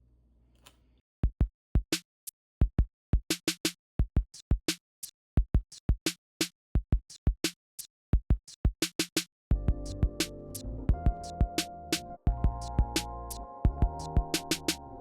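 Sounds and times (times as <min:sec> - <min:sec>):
drum machine beat: 0:08.2 - 0:10.3, 0:10.9 - 0:14.8.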